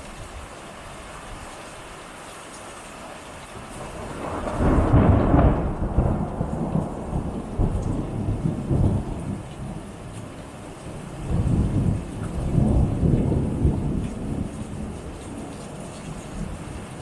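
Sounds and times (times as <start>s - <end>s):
steady rain: 0.0s - 17.0s
thunder rolling: 3.8s - 10.1s, 11.3s - 15.5s.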